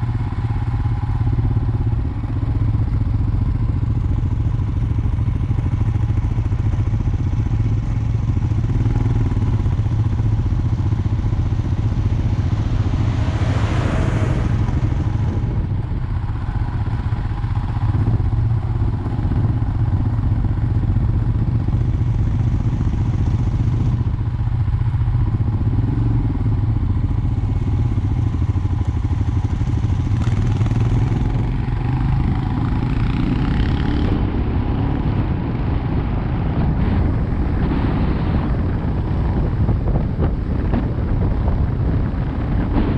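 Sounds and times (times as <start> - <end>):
clatter over rough track: 0.0 - 42.9
motorcycle engine running: 0.0 - 42.9
rushing noise: 10.3 - 16.7.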